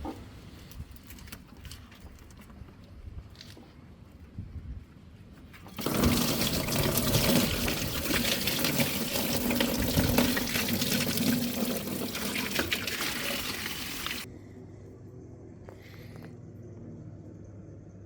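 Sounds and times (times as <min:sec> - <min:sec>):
stream of liquid running: 0:05.7 - 0:14.3.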